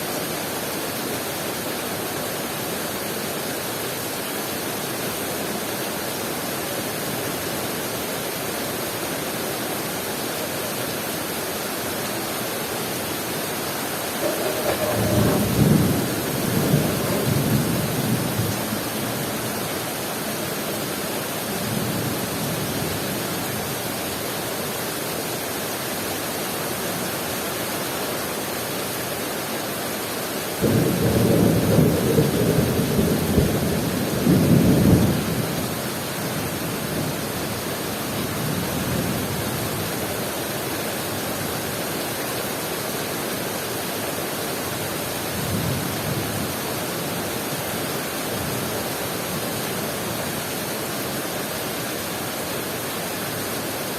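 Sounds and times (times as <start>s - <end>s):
heavy rain pouring: 0.0s - 53.9s
thunder rumble: 14.2s - 19.2s.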